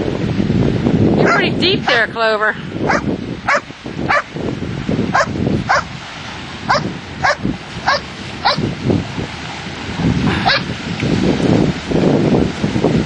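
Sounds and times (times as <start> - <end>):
surf rushing: 0.0 - 13.0
dog yelping: 2.9 - 4.3, 5.1 - 5.9, 6.7 - 8.7, 10.4 - 10.7.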